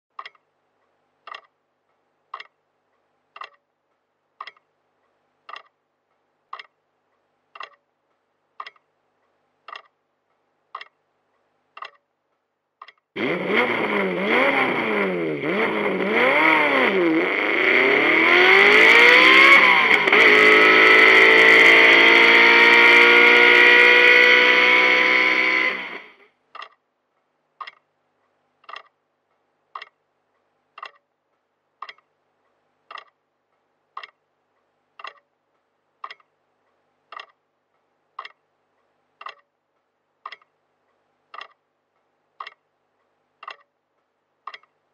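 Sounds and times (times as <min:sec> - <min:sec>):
clock ticking: 0:00.1 - 0:14.8, 0:15.4 - 0:44.9
race car engine revving: 0:13.2 - 0:26.2.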